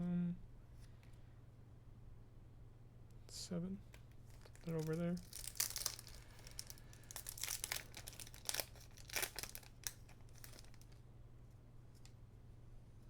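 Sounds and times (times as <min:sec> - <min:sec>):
foil wrapper crinkling: 0:04.1 - 0:11.0.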